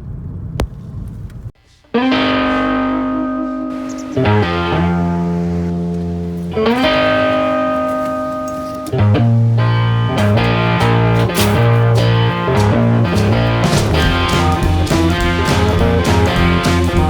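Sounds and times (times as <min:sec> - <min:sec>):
guitar chords: 0:01.9 - 0:17.0
bass line: 0:09.0 - 0:17.0.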